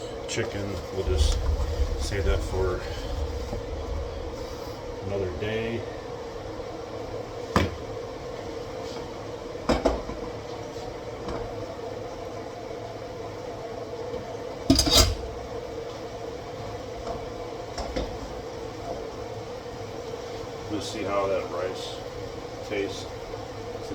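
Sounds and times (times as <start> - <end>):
steady hum: 0.8 - 8.2.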